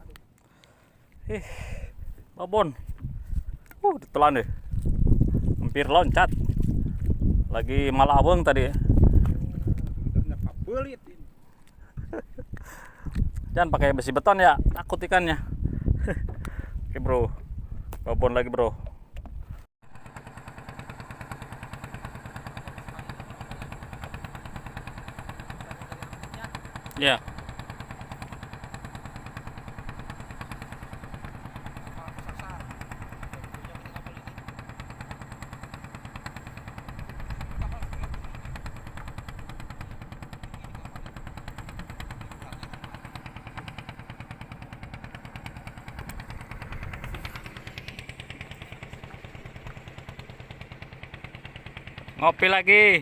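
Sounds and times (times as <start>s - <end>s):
small boat engine chugging: 19.8s - 53.0s.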